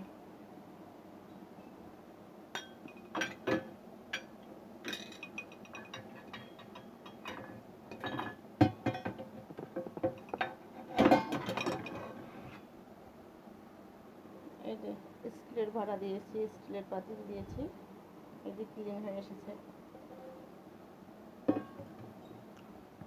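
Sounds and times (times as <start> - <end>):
dishes and pots clinking: 2.6 - 12.5, 21.5 - 22.3.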